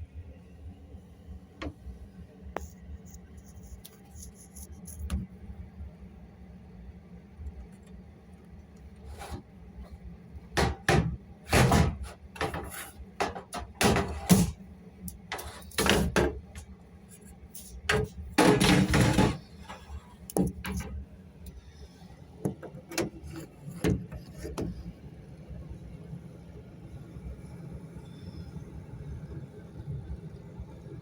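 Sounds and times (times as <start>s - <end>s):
steady low hum: 0.0s - 31.0s
hard objects knocking and scraping: 9.0s - 9.5s, 10.5s - 21.0s.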